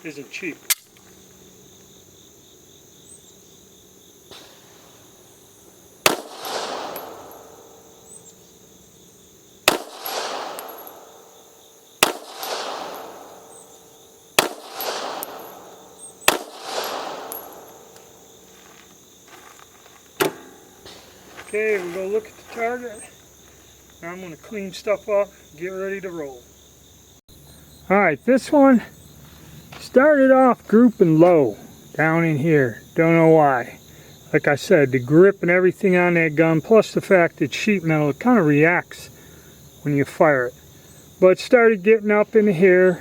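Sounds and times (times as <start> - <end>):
insects chirping: 0.0 - 43.0
pistol shots echoing: 6.0 - 8.8, 9.6 - 18.5.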